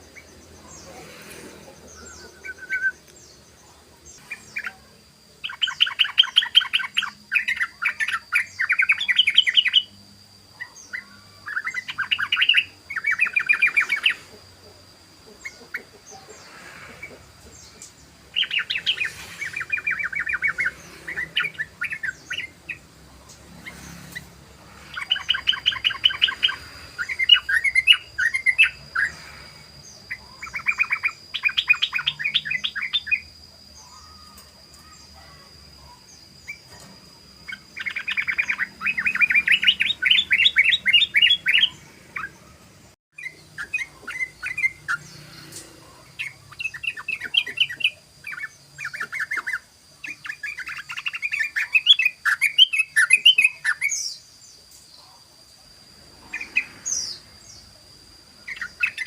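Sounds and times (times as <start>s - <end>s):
bird rolling chatter call: 10.6s - 54.1s.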